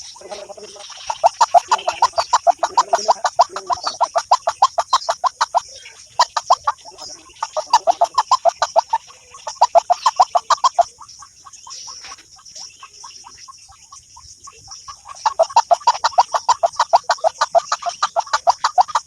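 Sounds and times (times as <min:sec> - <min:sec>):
bird call from phone: 0:00.0 - 0:10.8.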